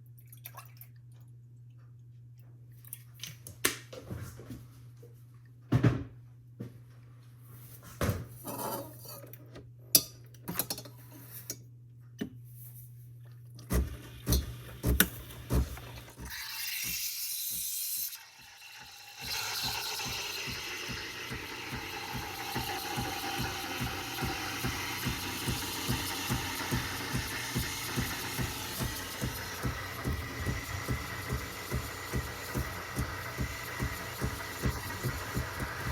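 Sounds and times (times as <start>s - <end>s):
cups and metal parts clattering: 8.4s - 11.6s
espresso machine pulsing: 13.7s - 35.9s
espresso machine hissing: 13.8s - 35.9s
heavy knocks: 20.5s - 35.9s.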